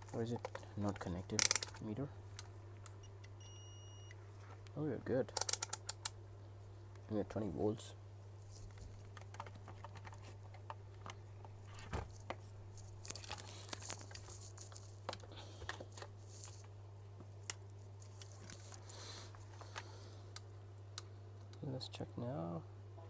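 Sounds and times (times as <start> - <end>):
low electrical hum: 0.0 - 23.0
small clicks and rustles: 8.4 - 21.6.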